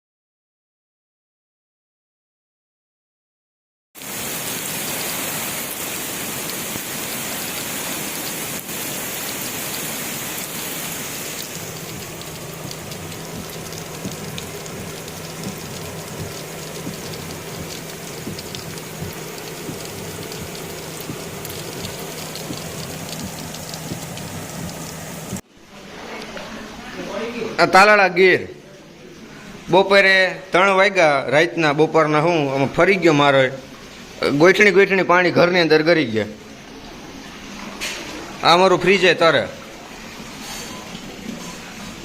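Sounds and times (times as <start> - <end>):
heavy rain pouring: 4.0 - 25.4.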